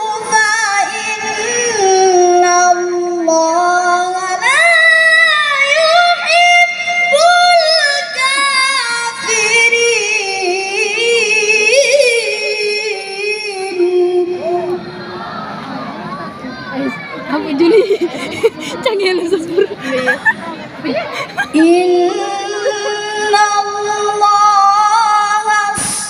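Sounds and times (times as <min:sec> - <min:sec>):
child reciting melodically: 0:00.0 - 0:14.8, 0:21.0 - 0:25.8.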